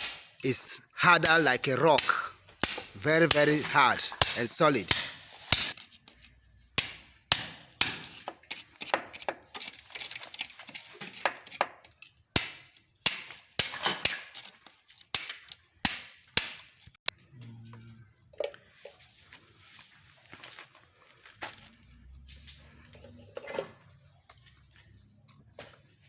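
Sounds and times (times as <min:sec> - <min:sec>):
hammer striking chisel into concrete: 0:00.0 - 0:00.4, 0:01.2 - 0:05.8, 0:06.8 - 0:09.4, 0:12.4 - 0:14.4, 0:15.1 - 0:16.7.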